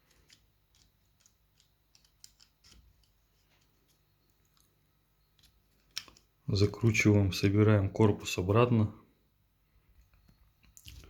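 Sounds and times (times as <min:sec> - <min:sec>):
plastic parts clicking: 0:00.0 - 0:04.7, 0:05.4 - 0:06.3.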